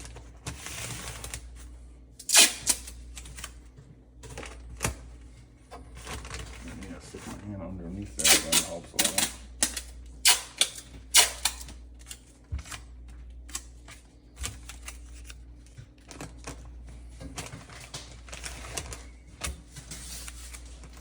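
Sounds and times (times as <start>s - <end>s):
tape rustling: 5.9s - 21.0s.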